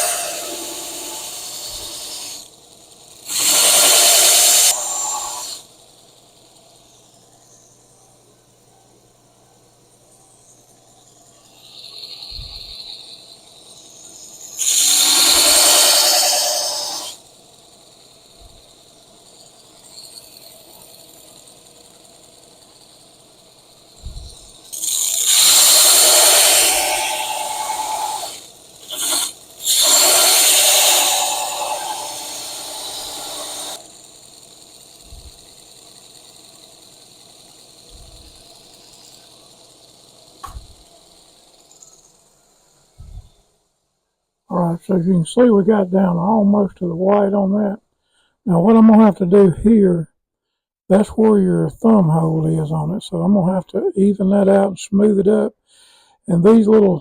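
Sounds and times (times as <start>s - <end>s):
belt sander grinding steel: 0.0s - 8.2s, 10.0s - 43.4s
faint hiss: 0.0s - 43.8s.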